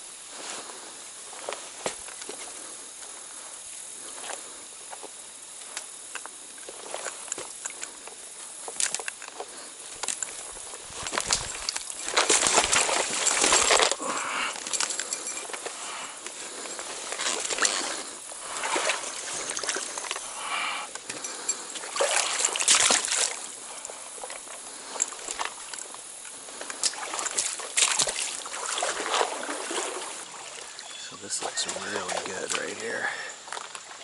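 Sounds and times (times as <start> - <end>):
stream trickling: 5.0 - 34.0
legs wading through water: 6.7 - 34.0.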